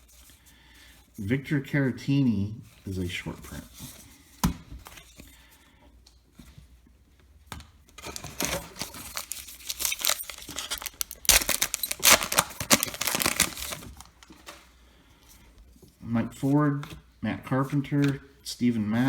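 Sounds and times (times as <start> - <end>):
wrapper tearing and crinkling: 8.0 - 14.6.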